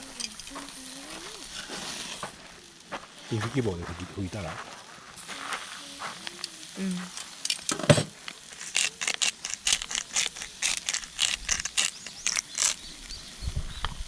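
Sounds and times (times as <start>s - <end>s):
charcoal crackling and popping: 0.0s - 14.0s.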